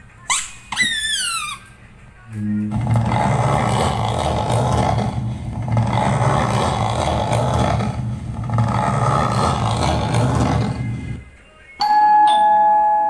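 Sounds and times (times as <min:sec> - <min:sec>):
engine revving through speaker: 0:02.4 - 0:11.2.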